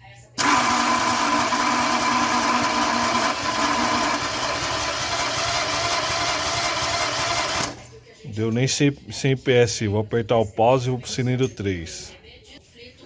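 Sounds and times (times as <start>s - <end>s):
starter motor cranking engine: 0.4s - 8.0s.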